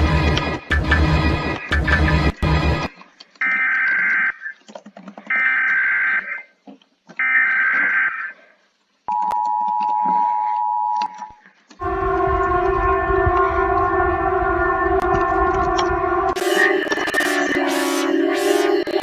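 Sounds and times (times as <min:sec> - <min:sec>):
two-tone attention signal: 0:11.8 - 0:19.0
alert data bursts: 0:16.4 - 0:19.0.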